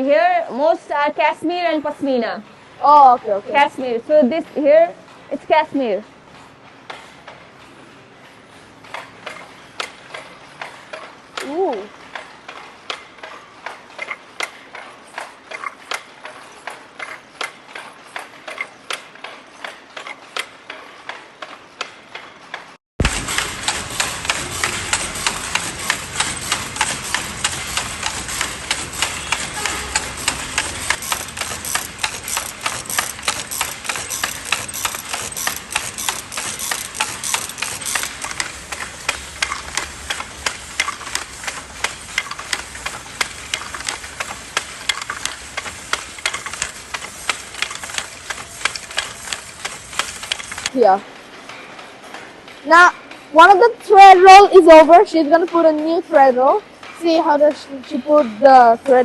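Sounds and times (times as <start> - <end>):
wooden machinery clattering: 22.1 - 52.6.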